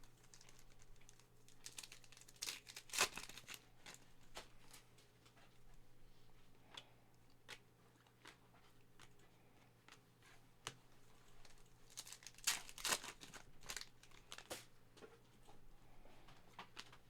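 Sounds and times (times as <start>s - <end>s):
card wrapper crinkling and tearing: 0.0s - 4.8s, 11.4s - 14.7s.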